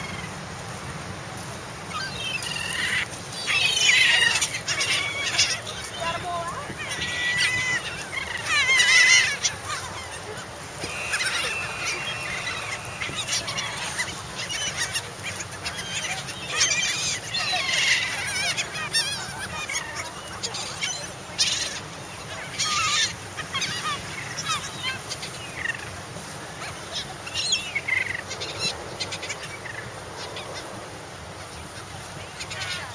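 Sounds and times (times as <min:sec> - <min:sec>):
seagulls squawking: 0:01.9 - 0:25.9.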